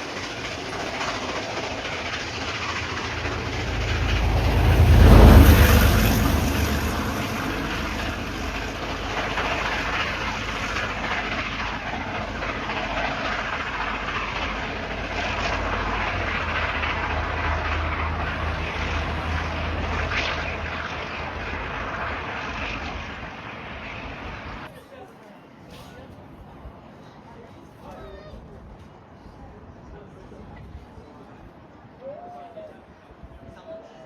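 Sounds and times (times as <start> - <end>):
low hum: 0.0 - 24.7
train rolling on rails: 0.0 - 24.7.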